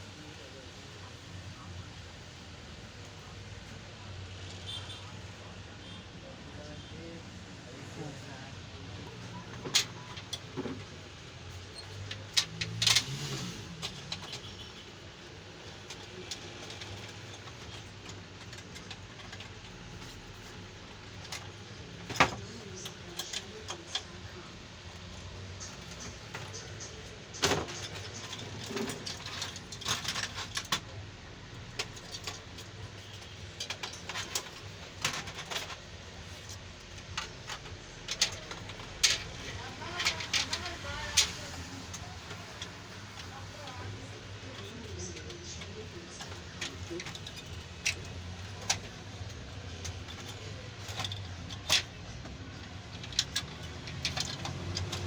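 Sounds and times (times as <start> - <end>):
clicks and taps of handling parts: 13.8 - 55.0.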